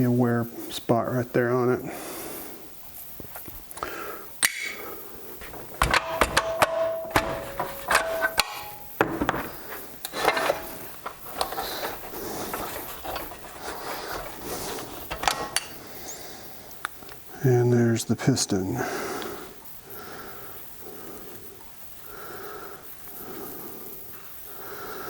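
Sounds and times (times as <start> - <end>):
metallic clinks of engine parts: 5.4 - 9.0
ringing metal strikes: 5.5 - 9.0.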